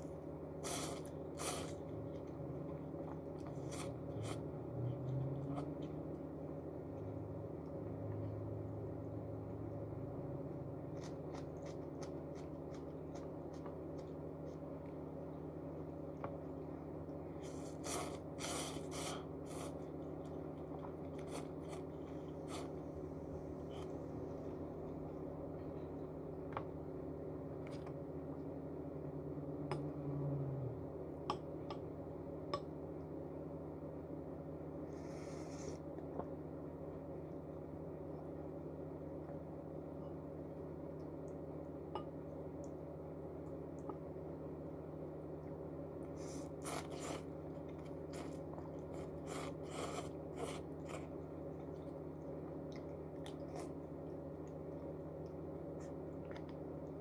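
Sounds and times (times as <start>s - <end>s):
low electrical hum: 0.0s - 57.0s
person chewing noodles: 0.6s - 6.2s, 10.8s - 15.0s, 17.4s - 24.6s, 45.4s - 57.0s.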